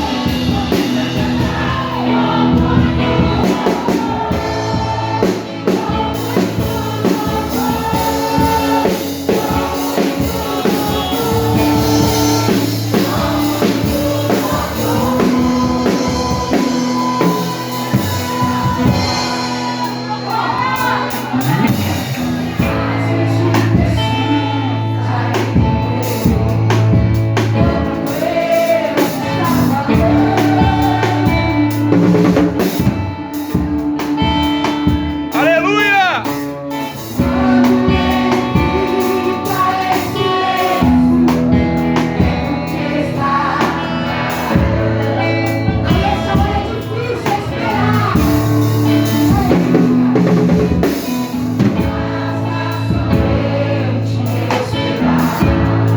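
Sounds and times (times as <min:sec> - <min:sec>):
bass line: 0:00.0 - 0:55.9
drum kit beat: 0:00.0 - 0:55.9
person singing: 0:35.3 - 0:50.6.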